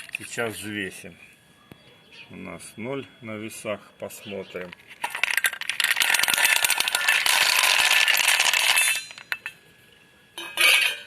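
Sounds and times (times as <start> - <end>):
nuts clattering into container: 4.9 - 9.5.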